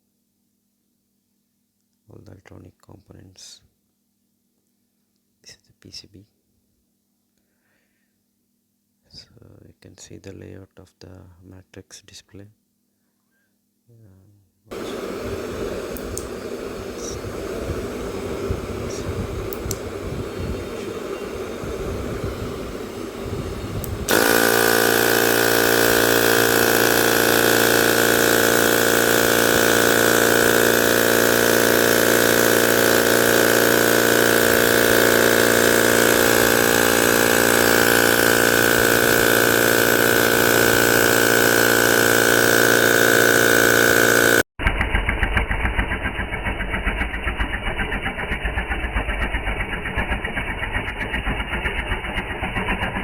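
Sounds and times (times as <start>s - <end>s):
tyre inflator motor and pump: 14.7s - 53.0s.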